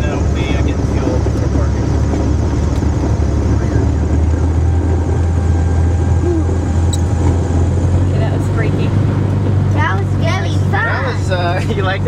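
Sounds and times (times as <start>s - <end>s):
aircraft piston engine droning: 0.0s - 12.0s.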